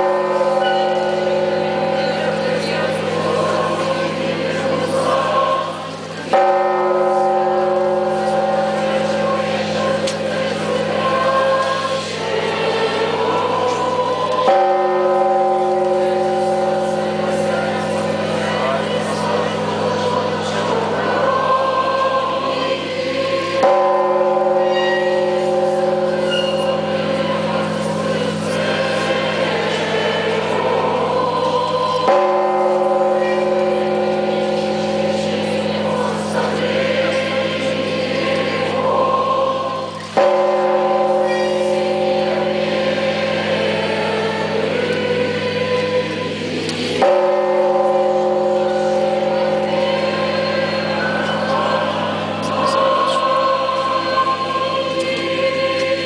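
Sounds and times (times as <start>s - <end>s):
bell struck: 0.0s - 3.1s, 23.6s - 28.6s, 47.0s - 54.1s
deep church bells humming: 0.0s - 56.0s.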